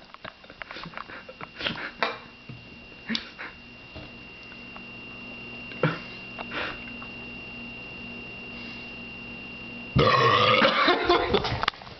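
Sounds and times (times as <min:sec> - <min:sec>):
faint high whine: 0:00.0 - 0:11.9.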